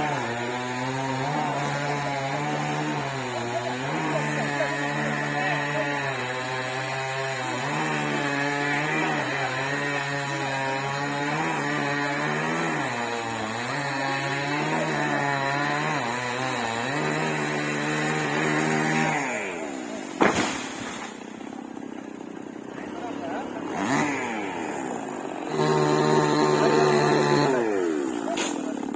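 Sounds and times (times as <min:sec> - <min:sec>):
chainsaw cutting: 0:00.0 - 0:28.9
sharp crack: 0:20.1 - 0:21.3, 0:28.2 - 0:28.8.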